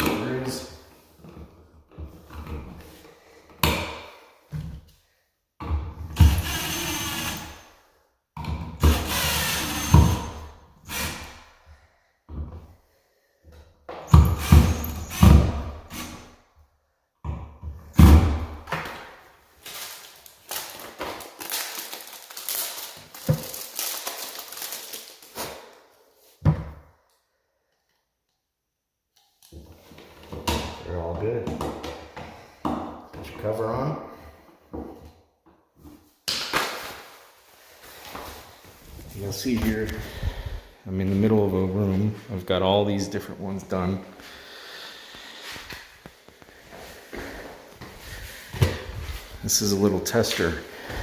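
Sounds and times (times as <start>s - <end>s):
screws being driven: 6.2s - 7.6s, 8.8s - 11.3s.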